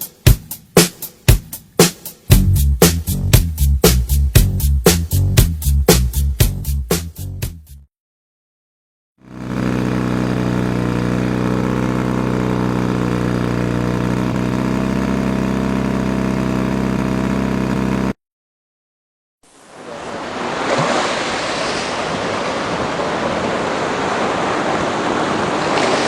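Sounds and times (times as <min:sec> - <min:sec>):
low engine drone: 0:09.2 - 0:18.2.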